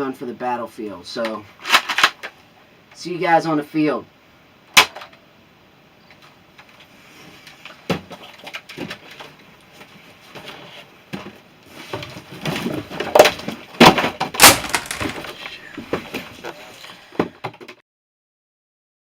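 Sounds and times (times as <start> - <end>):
hard plastic clattering knocks: 13.2 - 16.1.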